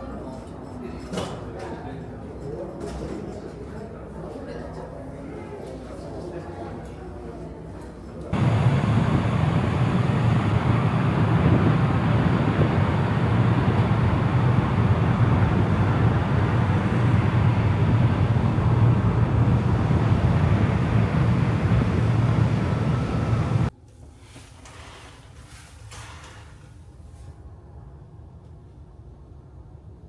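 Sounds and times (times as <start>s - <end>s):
low engine rumble: 8.3s - 23.7s
rushing noise: 8.4s - 23.7s.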